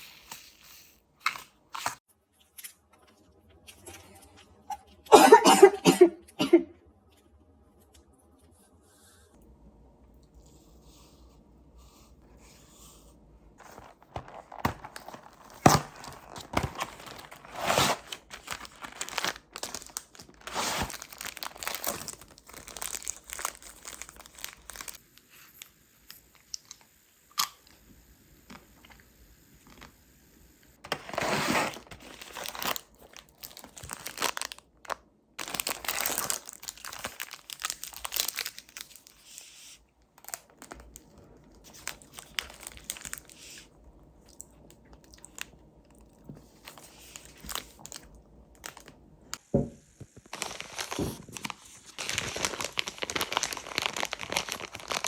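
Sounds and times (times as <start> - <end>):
packaging crinkling and tearing: 13.6 - 25.6, 30.8 - 43.7, 44.4 - 49.4, 50.2 - 55.0.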